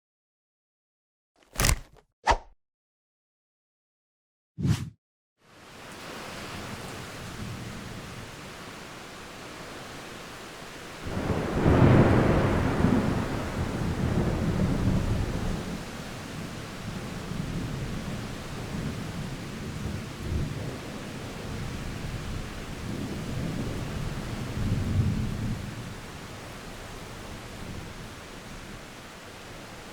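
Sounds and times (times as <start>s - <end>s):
steady rain: 5.4s - 29.9s
thunder clap and rumble: 11.1s - 15.9s.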